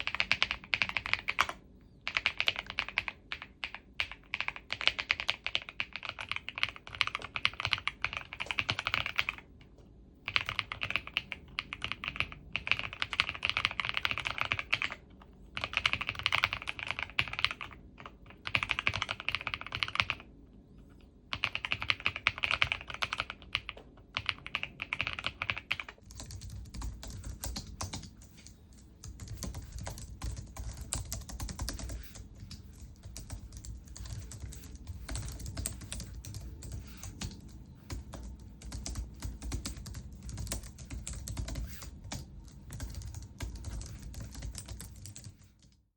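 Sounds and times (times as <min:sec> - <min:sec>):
clicky keyboard typing: 0:00.0 - 0:20.3, 0:21.3 - 0:45.8
soft dull keyboard typing: 0:00.0 - 0:45.9.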